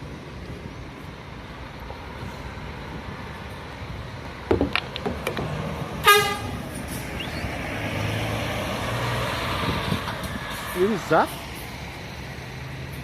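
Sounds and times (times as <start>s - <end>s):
bus engines running: 0.0s - 13.0s
sharp knocks: 4.5s - 5.6s
vehicle horn toot: 6.0s - 6.5s.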